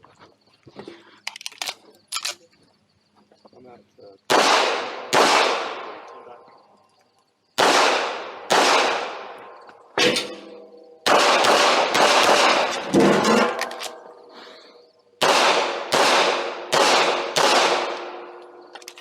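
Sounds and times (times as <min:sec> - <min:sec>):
handgun shots echoing: 0:04.3 - 0:06.2, 0:07.6 - 0:14.1, 0:15.2 - 0:18.6.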